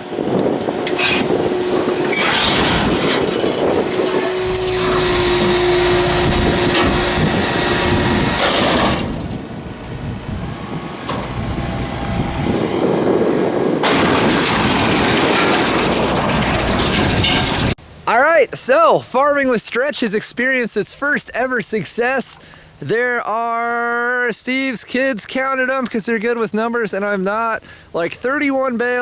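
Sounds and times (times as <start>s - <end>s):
tractor engine and baler running: 0.0s - 17.8s.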